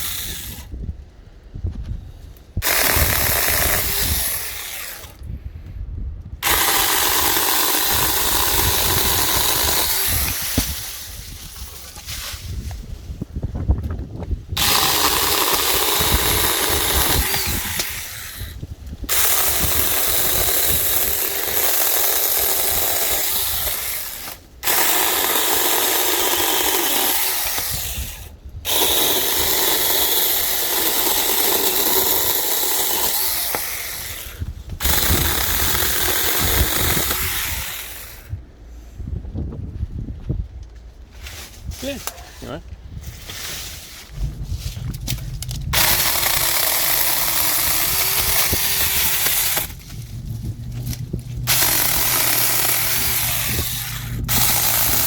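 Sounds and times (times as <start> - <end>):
mini chainsaw cutting: 0.0 - 0.7, 2.6 - 5.2, 6.4 - 12.1, 14.6 - 38.4, 44.9 - 55.0.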